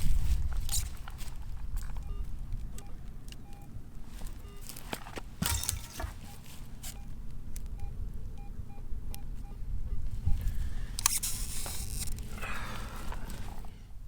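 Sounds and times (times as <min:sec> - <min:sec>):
metal detector beeps: 0:01.8 - 0:07.2, 0:07.8 - 0:12.1.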